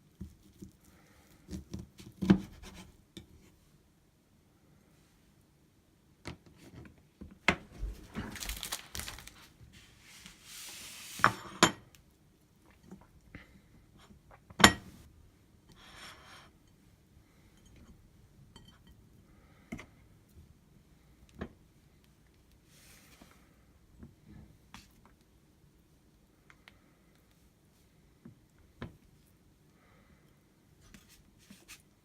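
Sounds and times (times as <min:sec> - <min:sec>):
rustling: 0:07.6 - 0:11.3.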